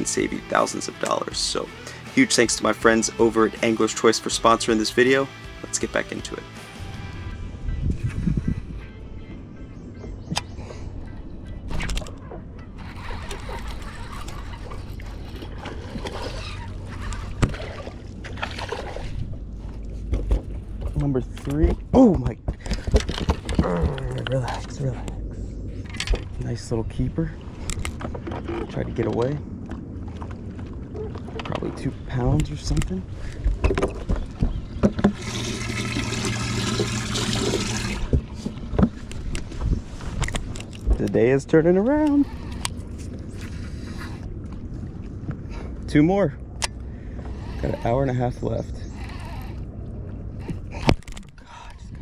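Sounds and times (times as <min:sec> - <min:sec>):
low rumble: 0:06.4 - 0:47.6
low pump hum: 0:06.7 - 0:52.0
water lapping against boat: 0:10.3 - 0:26.4, 0:27.0 - 0:52.0
water rushing into a tank: 0:35.1 - 0:38.2.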